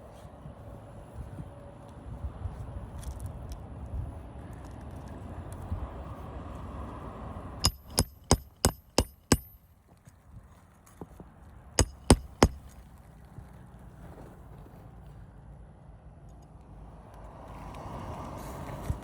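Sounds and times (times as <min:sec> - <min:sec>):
hammer driving roofing nails: 0:07.6 - 0:09.6, 0:11.8 - 0:12.8.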